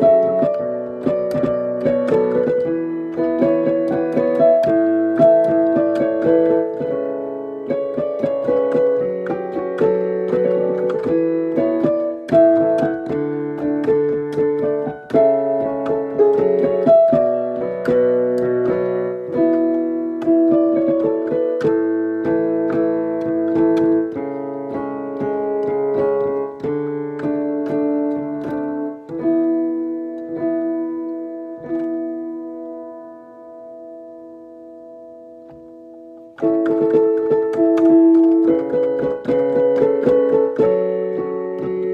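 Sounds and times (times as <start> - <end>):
slow piano playing: 0.0 - 41.9.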